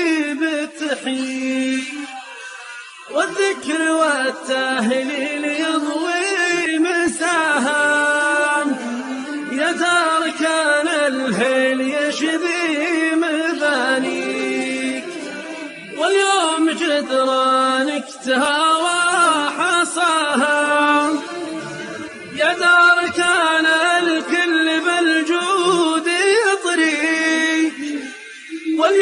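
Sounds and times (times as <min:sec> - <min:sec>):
person chanting sung poem: 0:00.0 - 0:29.0
breaths between phrases: 0:02.1 - 0:03.1.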